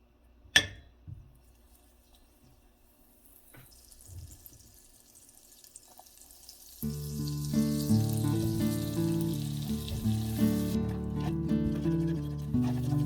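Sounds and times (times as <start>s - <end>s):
water running from a tap: 3.4s - 10.8s.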